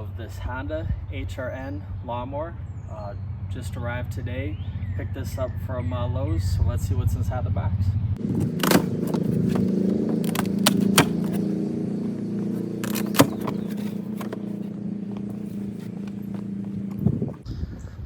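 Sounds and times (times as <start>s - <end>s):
steady low hum: 7.8s - 17.7s
cardboard scraping: 8.2s - 17.4s
sharp snaps and clicks of packing: 8.3s - 11.5s, 12.8s - 14.5s.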